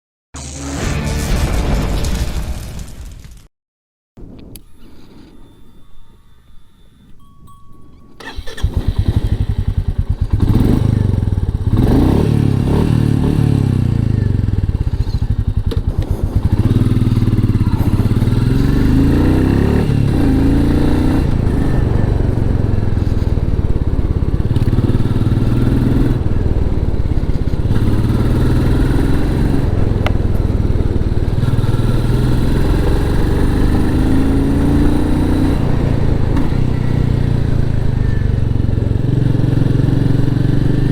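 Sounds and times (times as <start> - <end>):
motorcycle engine revving: 8.2 - 40.9.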